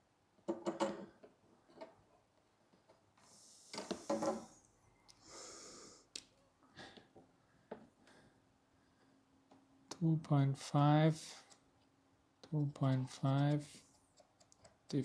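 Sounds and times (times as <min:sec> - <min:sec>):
man breathing and sniffing: 0:03.2 - 0:04.6, 0:05.2 - 0:06.1.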